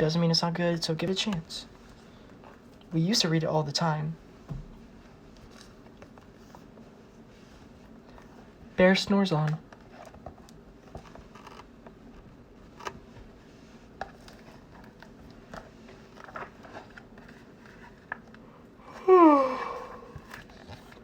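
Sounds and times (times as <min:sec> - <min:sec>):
book pages rustling: 0:09.7 - 0:18.4.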